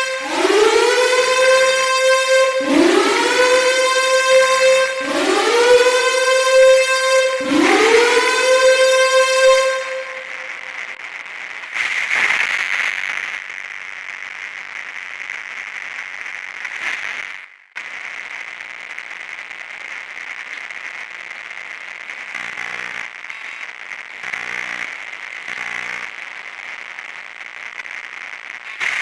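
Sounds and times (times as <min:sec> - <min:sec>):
crackling static: 0:10.5 - 0:29.0.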